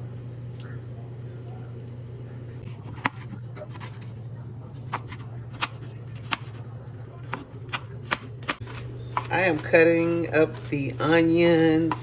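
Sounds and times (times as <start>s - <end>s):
knife chopping on cutting board: 2.8s - 4.0s, 4.9s - 6.6s, 7.2s - 12.0s.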